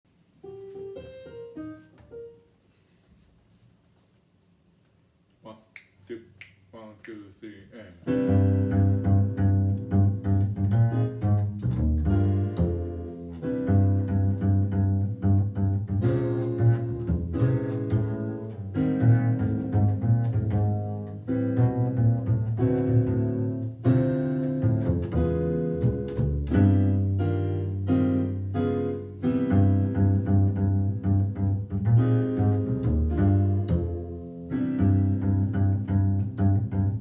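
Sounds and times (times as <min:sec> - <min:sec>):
piano: 0:00.1 - 0:03.2, 0:08.0 - 0:37.0
bass line: 0:08.1 - 0:37.0.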